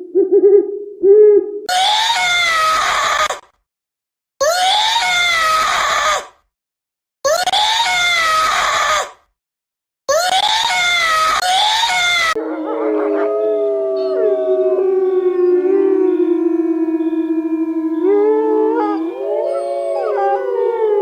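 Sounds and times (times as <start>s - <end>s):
chorus of howls: 12.3s - 21.0s
long loud animal cries: 12.4s - 21.0s.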